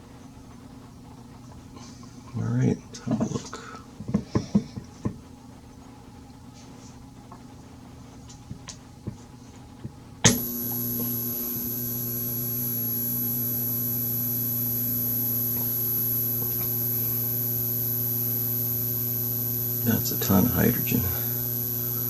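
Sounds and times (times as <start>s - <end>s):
steady electrical hum: 4.8s - 22.0s
sharp click: 10.2s - 11.1s
high-pitched whine: 10.3s - 22.0s.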